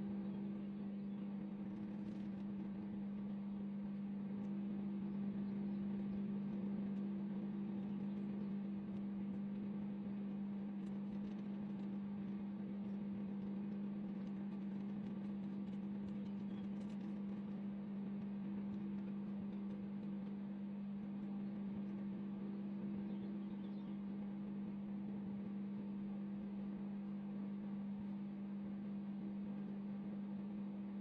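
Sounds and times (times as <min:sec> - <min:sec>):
microwave oven humming: 0:00.0 - 0:31.0
faint ticks: 0:10.8 - 0:20.4.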